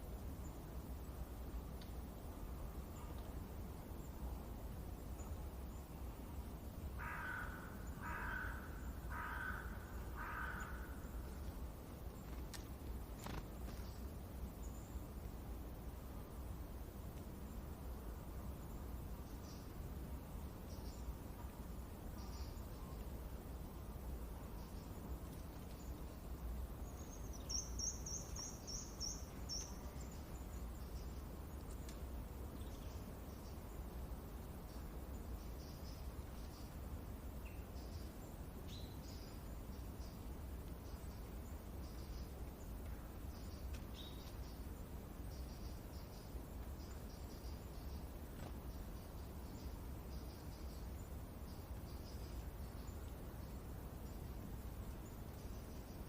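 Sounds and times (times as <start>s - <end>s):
low wind rumble: 0.0s - 56.0s
songbird singing: 0.0s - 56.0s
crow cawing: 7.0s - 11.0s
faint bird chirps: 20.6s - 23.2s, 24.2s - 56.0s.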